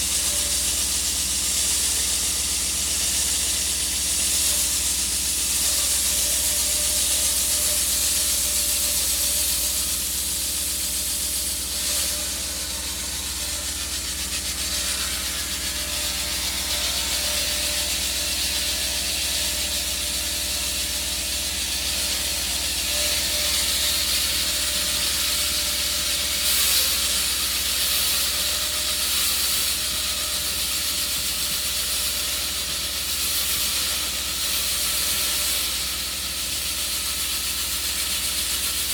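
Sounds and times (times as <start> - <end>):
concrete saw blade hissing: 0.0 - 38.9
low machine hum: 5.6 - 26.6.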